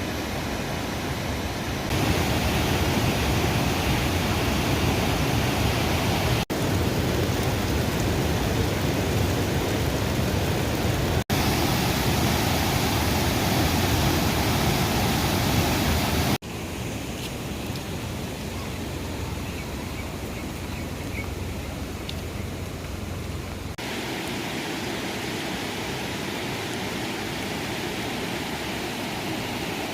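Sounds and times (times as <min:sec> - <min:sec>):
fast-flowing river rushing: 0:00.0 - 0:06.4, 0:10.9 - 0:16.4, 0:23.8 - 0:29.9.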